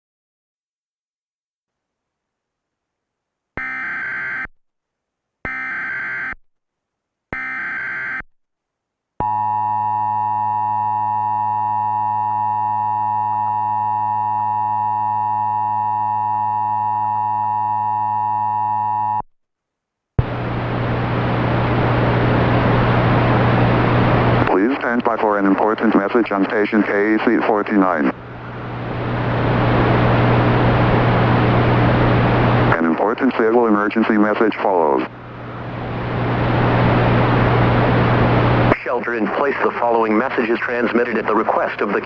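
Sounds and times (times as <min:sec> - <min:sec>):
low hum: 0:20.2 - 0:25.0, 0:28.0 - 0:32.8, 0:35.1 - 0:38.8.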